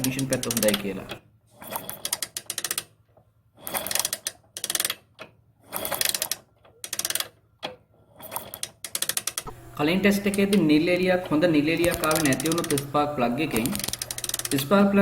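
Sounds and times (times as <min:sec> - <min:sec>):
motorcycle engine turning over: 0:08.2 - 0:15.0.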